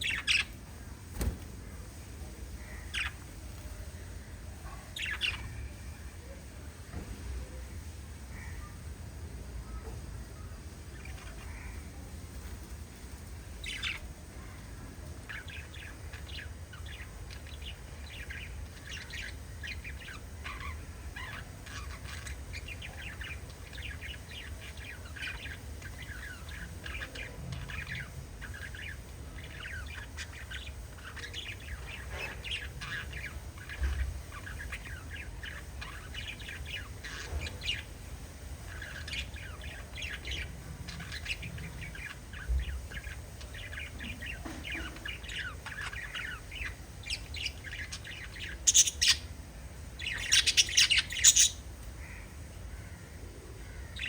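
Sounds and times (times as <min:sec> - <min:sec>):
budgerigars chirping: 0:00.0 - 0:00.6, 0:02.6 - 0:03.3, 0:04.7 - 0:05.7, 0:13.6 - 0:14.1, 0:15.2 - 0:54.0
low steady hum: 0:00.0 - 0:54.0.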